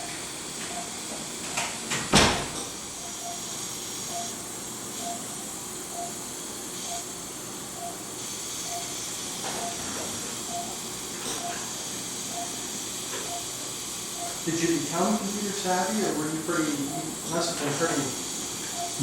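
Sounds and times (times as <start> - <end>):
patient monitor beeping: 0.7 - 1.0, 3.0 - 4.4, 5.0 - 6.2, 6.8 - 7.1, 7.7 - 8.0, 8.6 - 10.8, 11.4 - 15.4, 16.7 - 19.0.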